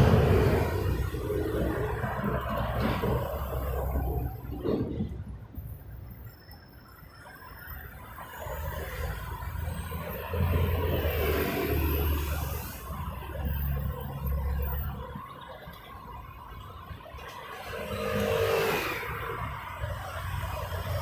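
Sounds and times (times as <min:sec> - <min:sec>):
vehicle passing close by: 0:00.0 - 0:04.4
city road traffic: 0:00.0 - 0:21.0.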